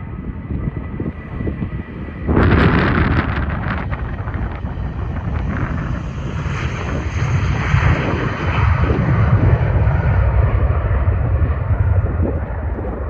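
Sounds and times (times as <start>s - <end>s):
jet engines roaring: 0.0s - 13.0s
wind buffeting microphone: 0.0s - 13.0s.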